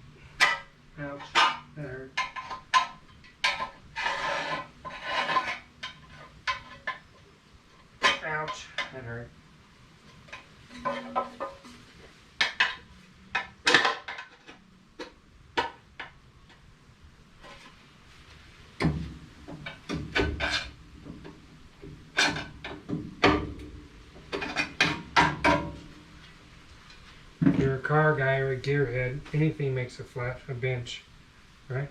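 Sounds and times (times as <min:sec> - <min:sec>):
pry bar scraping metal: 0:00.2 - 0:07.0.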